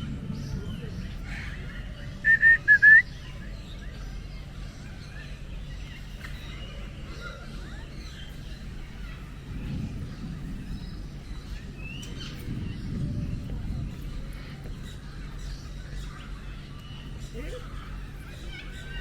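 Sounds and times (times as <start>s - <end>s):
faint bird chirps: 2.1s - 4.3s
bird calling loud clear notes: 2.2s - 3.2s.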